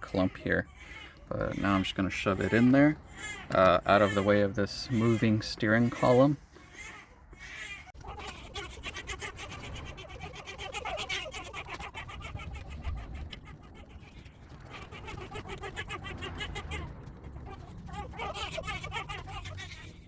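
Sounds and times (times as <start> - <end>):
wiring bundle clicking and crackling: 9.4 - 20.0.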